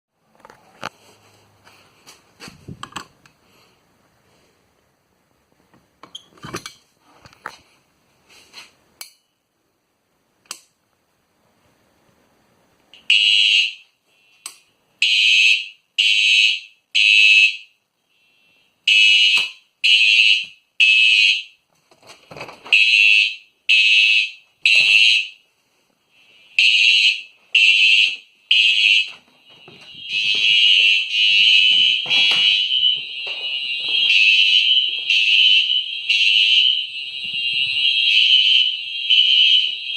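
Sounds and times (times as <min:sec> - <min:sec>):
fire alarm horns: 0:13.0 - 0:14.0, 0:15.0 - 0:17.8, 0:18.8 - 0:21.6, 0:22.7 - 0:25.4, 0:26.5 - 0:39.9.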